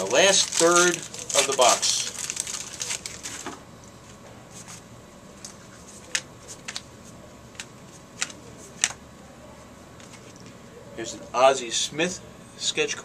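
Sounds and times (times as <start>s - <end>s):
wrapper crinkling as torn open: 0.0s - 3.5s
cards clicking and snapping: 7.6s - 9.0s.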